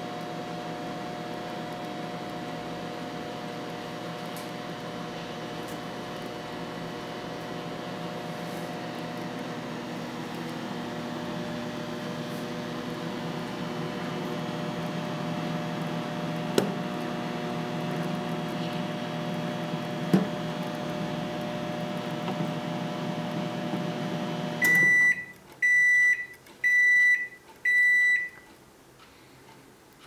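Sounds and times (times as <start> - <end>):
microwave oven humming: 0.0 - 28.4.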